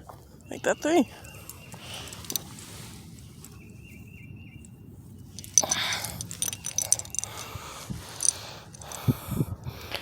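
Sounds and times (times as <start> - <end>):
close clicking and rustling: 1.4 - 2.6, 5.4 - 7.6, 8.2 - 9.0
light jingling: 4.5 - 9.1.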